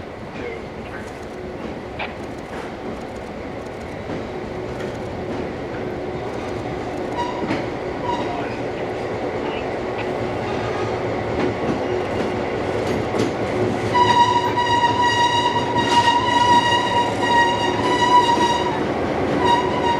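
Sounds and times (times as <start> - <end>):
train rumbling on track: 0.0 - 19.9
locomotive air horn blast: 7.2 - 8.7, 13.8 - 19.9.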